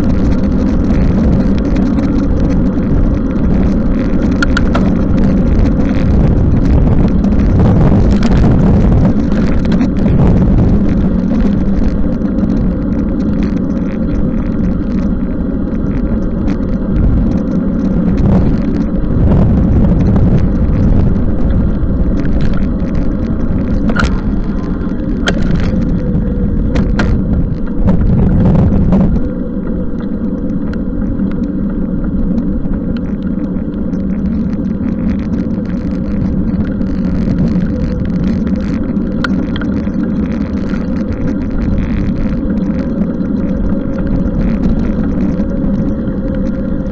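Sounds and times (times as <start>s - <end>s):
bicycle riding in rain: 0.0s - 46.9s
sharp clicks and knocks: 3.5s - 15.1s, 20.0s - 29.3s.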